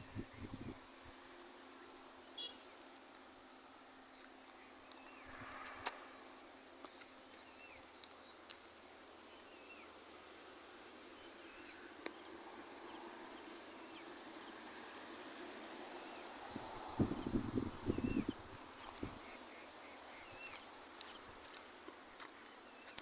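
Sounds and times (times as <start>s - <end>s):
high-pitched insect drone: 7.5s - 22.7s.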